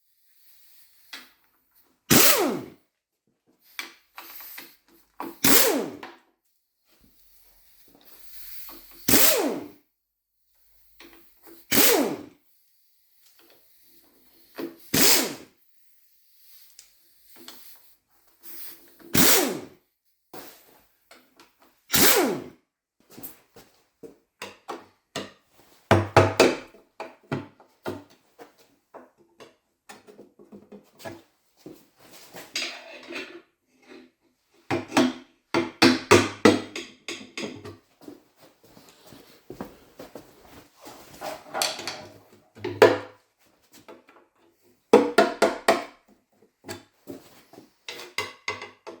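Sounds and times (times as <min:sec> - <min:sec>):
power tool bursts: 0:02.1 - 0:02.8, 0:05.4 - 0:06.0, 0:09.0 - 0:09.8, 0:11.6 - 0:12.3, 0:14.9 - 0:15.5, 0:19.1 - 0:19.8, 0:21.9 - 0:22.5.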